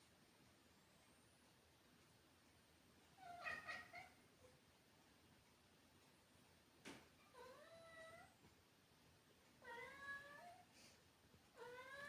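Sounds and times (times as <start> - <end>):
cat meowing: 3.2 - 4.2, 11.6 - 12.0.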